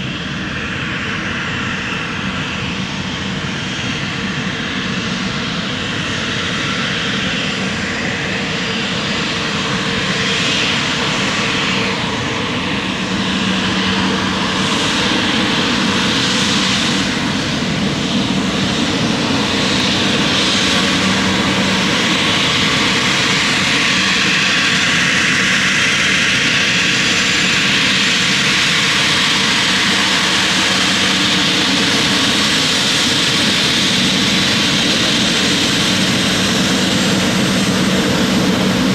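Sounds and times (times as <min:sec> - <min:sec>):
jet engines rushing: 0:00.0 - 0:38.9.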